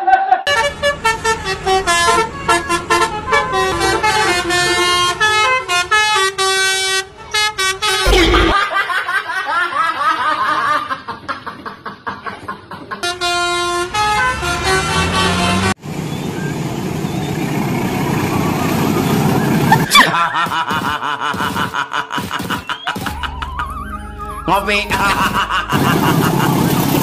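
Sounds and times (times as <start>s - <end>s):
musical multi-tone air horns: 0.5s - 8.0s, 13.0s - 15.8s.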